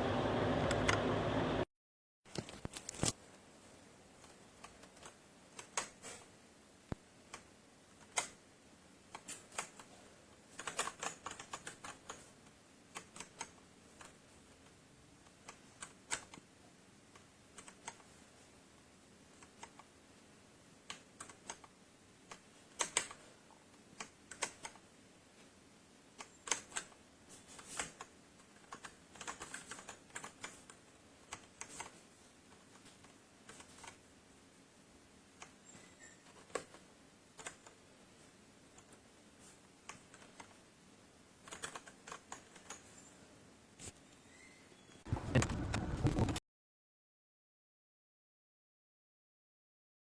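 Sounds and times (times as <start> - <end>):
mechanical keyboard typing: 10.6 - 12.3, 12.9 - 14.1, 22.3 - 23.2, 24.0 - 24.8, 28.6 - 30.7, 41.4 - 42.8, 45.1 - 46.4.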